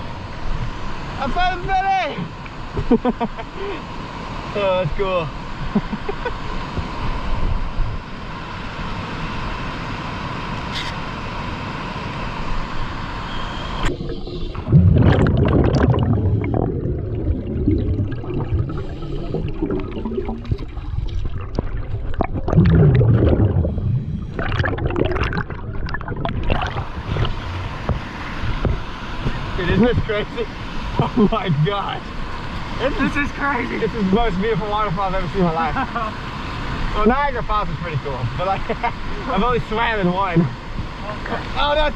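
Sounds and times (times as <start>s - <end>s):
underwater bubbles gurgling: 13.8s - 29.4s.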